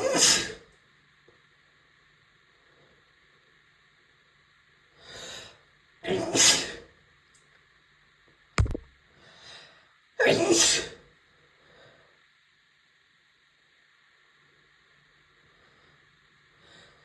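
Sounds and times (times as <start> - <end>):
sharp knock: 8.6 - 8.9
woman sneezing: 10.2 - 11.0.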